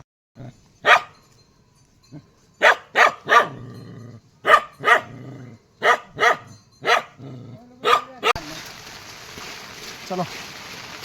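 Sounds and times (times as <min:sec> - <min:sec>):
dog barking: 0:00.8 - 0:01.2, 0:02.6 - 0:03.7, 0:04.4 - 0:05.2, 0:05.8 - 0:07.2, 0:07.8 - 0:08.4.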